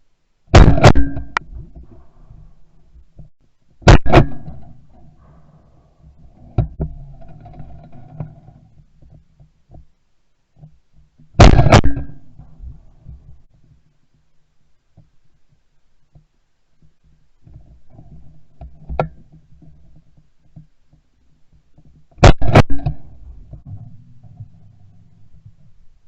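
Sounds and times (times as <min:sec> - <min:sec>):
shotgun blasts: 0:00.5 - 0:01.3, 0:03.8 - 0:04.5, 0:11.4 - 0:12.2, 0:22.2 - 0:23.0.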